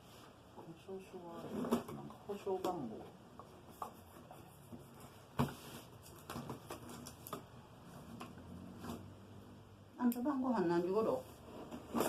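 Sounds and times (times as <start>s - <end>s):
paper and packaging rustling: 4.8s - 7.4s.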